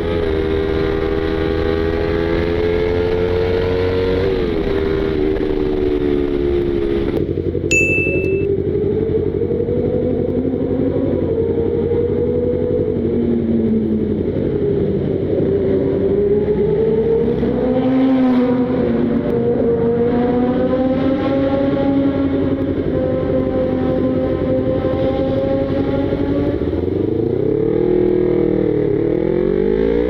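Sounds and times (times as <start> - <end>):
motorcycle engine running: 3.9 - 29.4.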